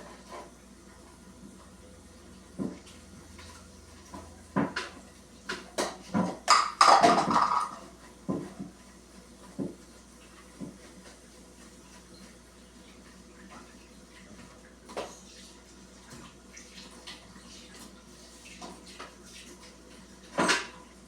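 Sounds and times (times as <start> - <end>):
objects knocking and clattering: 4.6 - 8.7.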